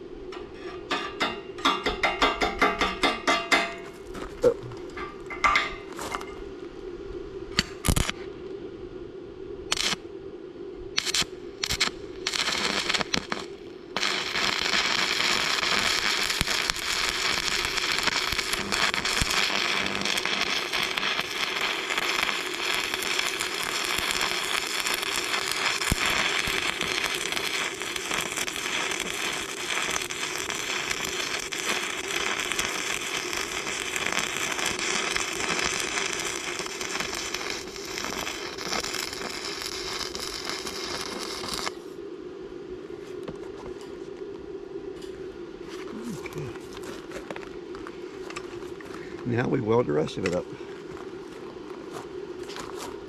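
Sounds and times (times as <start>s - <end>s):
welding arc crackling: 7.6s - 8.2s, 9.7s - 10.0s, 11.0s - 41.8s.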